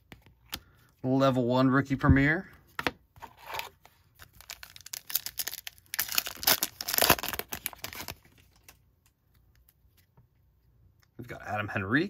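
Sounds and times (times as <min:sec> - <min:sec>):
foil wrapper tearing and crinkling: 0:03.4 - 0:08.7.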